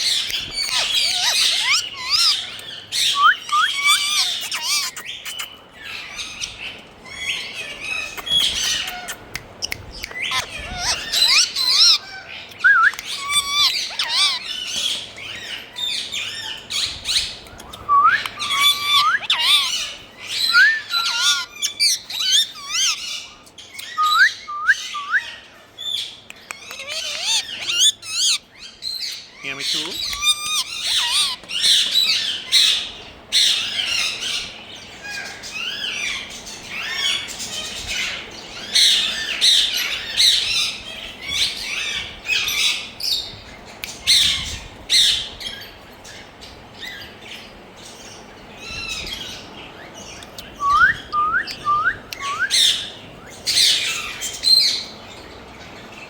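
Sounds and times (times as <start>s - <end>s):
parrots squawking: 0.0s - 55.7s.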